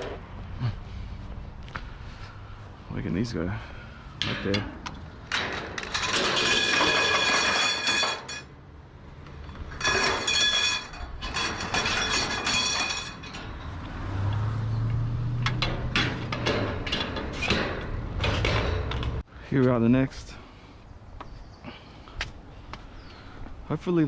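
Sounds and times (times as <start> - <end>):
scrap metal clattering onto pile: 5.3 - 8.5, 9.7 - 13.8, 15.6 - 19.2.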